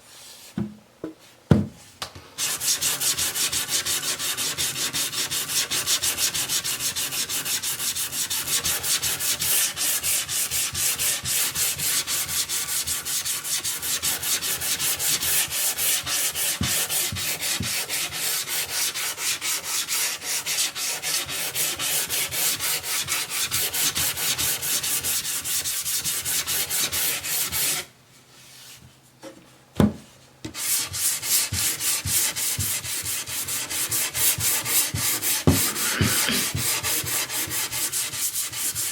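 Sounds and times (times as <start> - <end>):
knock: 0.6 - 1.8, 35.5 - 36.7
sandpaper rubbing on wood: 2.4 - 27.9, 30.5 - 38.9.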